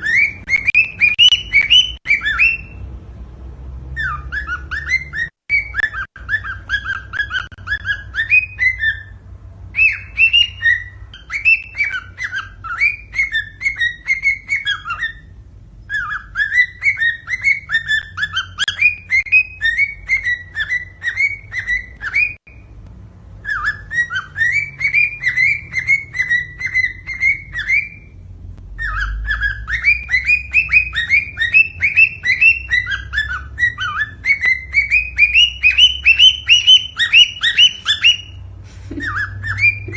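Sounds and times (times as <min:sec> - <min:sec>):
cockatiel whistled chirps: 0:00.0 - 0:02.9, 0:04.0 - 0:22.7, 0:23.4 - 0:39.9
low steady hum: 0:00.0 - 0:39.9.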